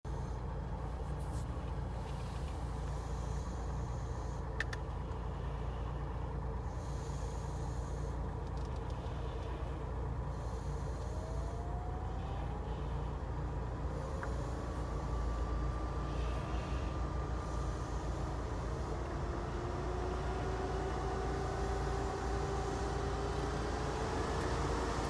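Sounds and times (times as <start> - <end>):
low rumble: 0.0 - 21.0
faint rising whine: 0.1 - 25.0
electric fan running: 0.9 - 25.0.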